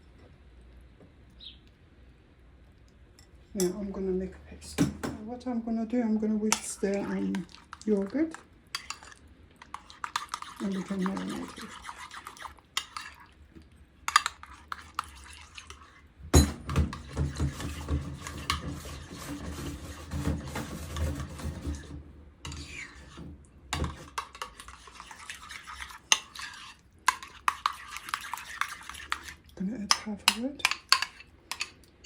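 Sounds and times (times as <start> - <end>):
whisk scraping and clinking bowl: 6.5 - 13.4, 14.1 - 31.8.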